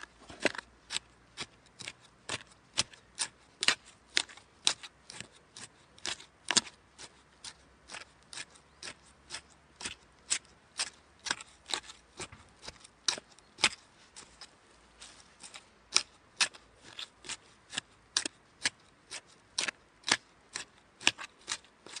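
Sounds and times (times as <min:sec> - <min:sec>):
garden hoe chopping ground: 0:00.0 - 0:22.0.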